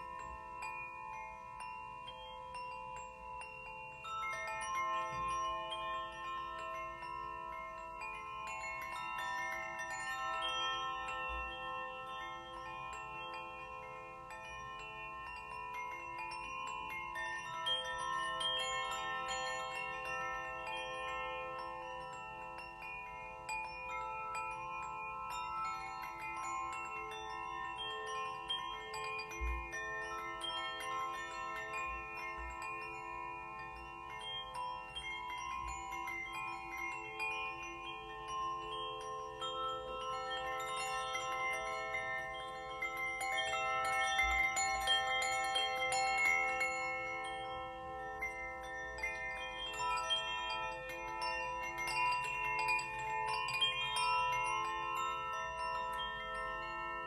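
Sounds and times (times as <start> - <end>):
metal chimes ringing: 0.0 - 57.0.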